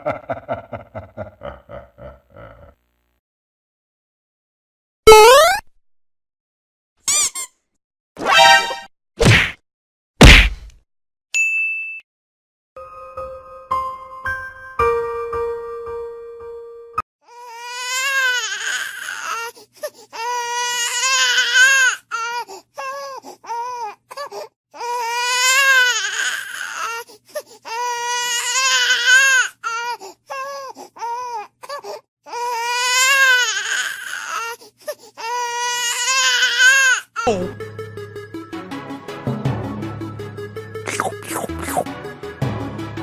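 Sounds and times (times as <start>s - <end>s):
baby sobbing cries: 17.2s - 37.3s
baby crying: 17.2s - 37.4s, 40.9s - 41.8s.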